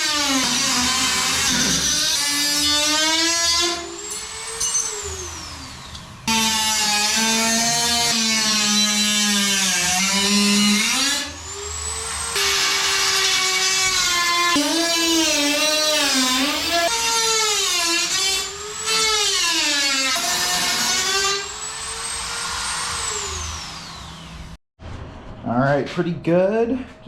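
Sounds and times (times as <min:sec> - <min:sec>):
rotary tool cutting metal: 0:08.6 - 0:24.4.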